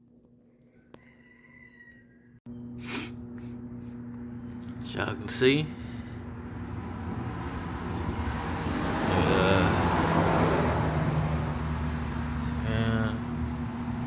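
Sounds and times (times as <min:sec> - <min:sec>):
steady low hum: 0:02.4 - 0:14.0
road vehicle passing: 0:05.6 - 0:14.0.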